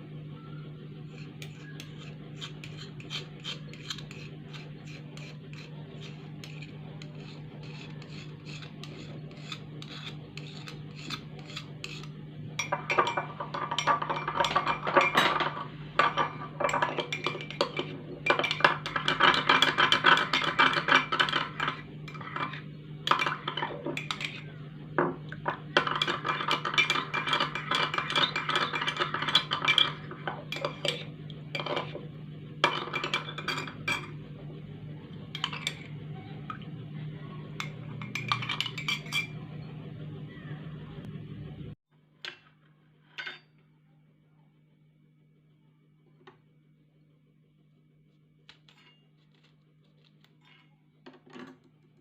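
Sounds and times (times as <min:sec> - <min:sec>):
steady low hum: 0:00.0 - 0:41.8
utensils clinking on dishes: 0:01.2 - 0:32.0, 0:32.6 - 0:34.2, 0:35.3 - 0:36.6, 0:37.6 - 0:39.6, 0:43.1 - 0:43.6.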